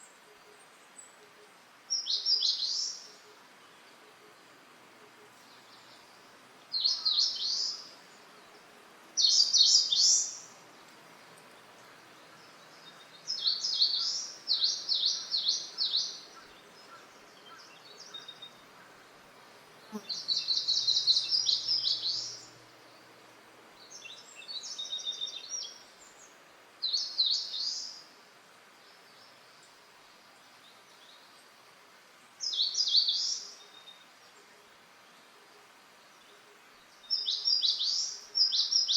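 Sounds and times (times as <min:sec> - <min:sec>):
faint steady hiss: 0:00.0 - 0:38.9
bird singing chirping phrases: 0:05.4 - 0:10.6, 0:11.7 - 0:18.7, 0:19.9 - 0:23.1, 0:23.8 - 0:28.0, 0:32.4 - 0:34.4, 0:36.2 - 0:38.9.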